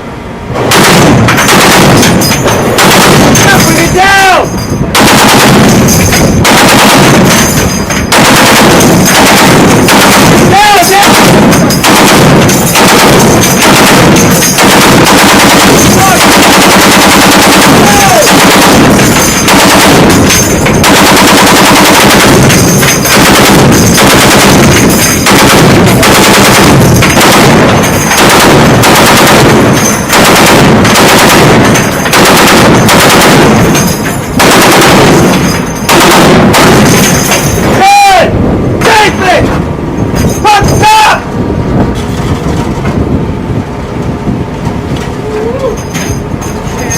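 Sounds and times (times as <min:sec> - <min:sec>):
heavy machine gun bursts: 0:00.6 - 0:38.1.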